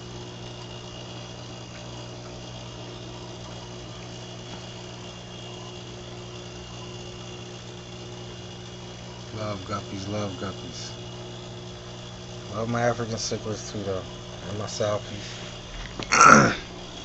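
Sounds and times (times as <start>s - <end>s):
electrical hum: 0.0s - 17.0s
air pump hiss: 6.9s - 17.0s.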